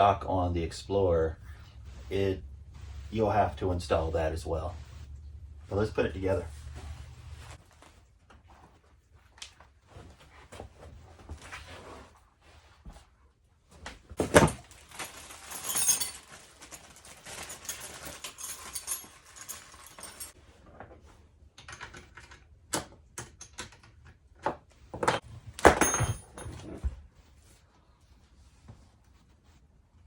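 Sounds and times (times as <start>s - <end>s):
rustling and scraping of parts: 1.2s - 22.4s.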